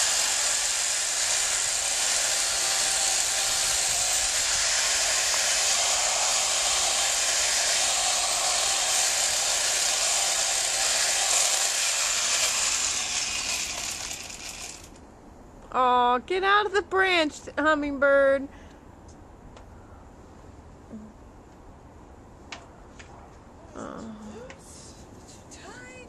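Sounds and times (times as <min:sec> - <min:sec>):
chainsaw running: 0:00.0 - 0:15.0.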